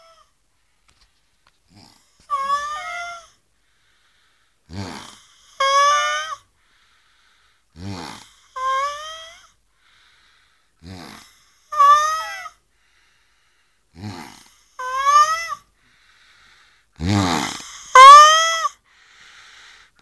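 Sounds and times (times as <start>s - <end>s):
low fluttering snore: 4.7s - 5.3s, 7.8s - 8.3s, 10.8s - 11.4s, 14.0s - 14.6s.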